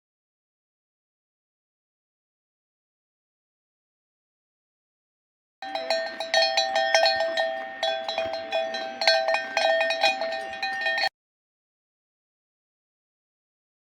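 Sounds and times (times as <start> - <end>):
metal bells clanking: 5.6 - 11.1.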